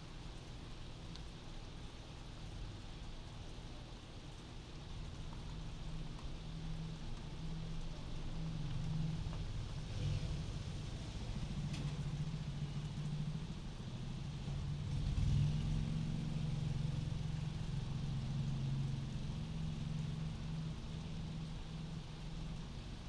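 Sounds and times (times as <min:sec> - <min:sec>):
faint rain hiss: 0:00.0 - 0:23.0.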